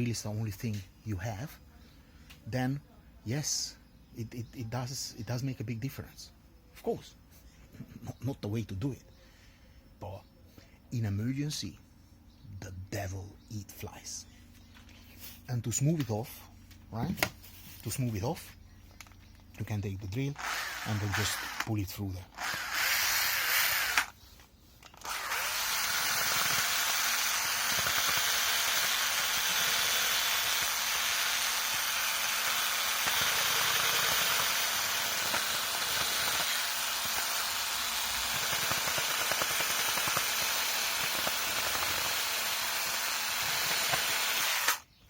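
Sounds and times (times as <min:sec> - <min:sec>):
drill bit grinding wood: 0:20.3 - 0:24.2, 0:24.8 - 0:44.9.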